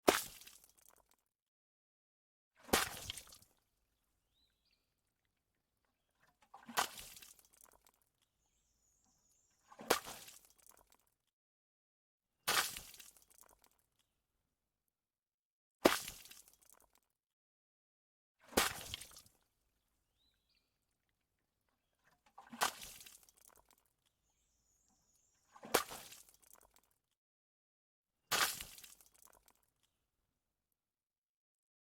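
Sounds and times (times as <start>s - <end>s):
faint bird chirps: 8.4s - 9.8s, 24.2s - 25.7s
water splashing onto cement: 12.5s - 13.7s, 28.3s - 29.6s
water splashing onto concrete: 28.3s - 29.5s.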